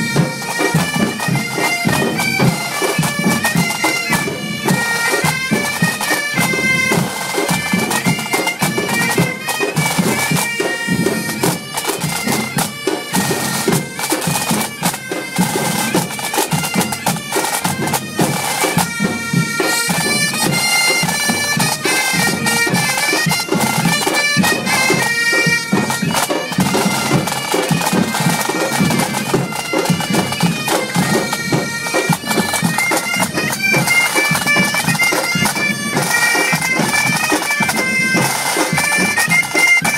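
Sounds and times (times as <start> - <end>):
bagpipes playing tune: 0.0 - 39.9
drums and percussion beating: 0.0 - 39.9.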